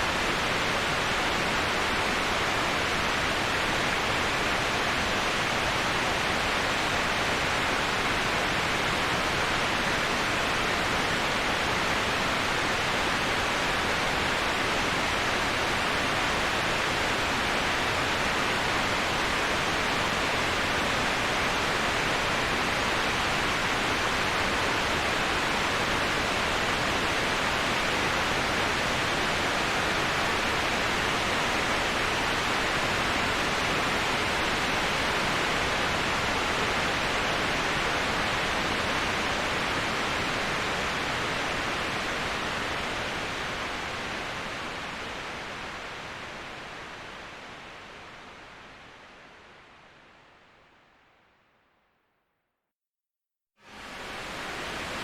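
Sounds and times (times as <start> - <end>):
waterfall rushing: 53.7 - 55.0.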